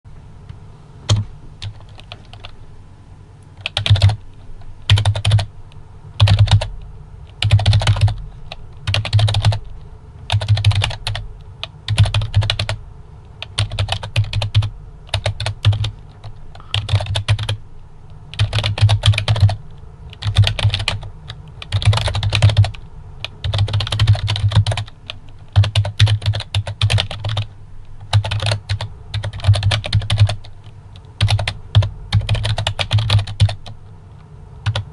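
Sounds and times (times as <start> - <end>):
keyboard typing clicks: 3.6 - 4.2, 4.9 - 5.5, 6.2 - 8.2, 8.8 - 9.7, 10.3 - 12.8, 13.4 - 17.6, 18.3 - 22.8, 25.5 - 33.8, 34.6 - 34.9.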